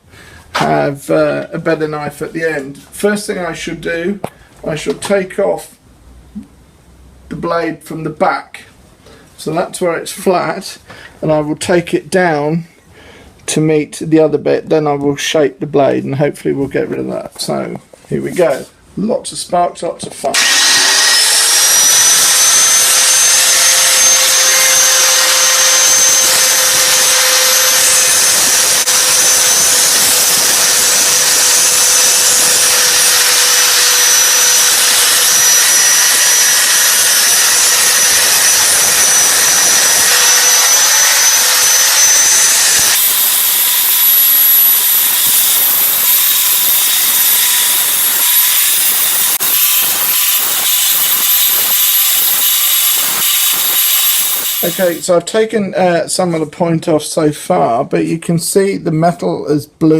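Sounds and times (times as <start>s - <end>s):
angle grinder grinding metal: 20.3s - 55.1s.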